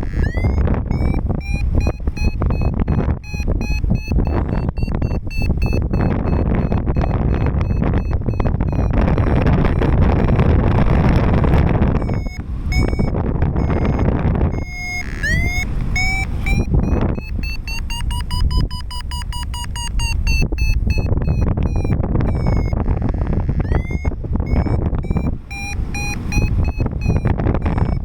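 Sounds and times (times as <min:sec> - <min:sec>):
rising short beeps: 0:00.0 - 0:28.0
wind on microphone: 0:00.0 - 0:28.0.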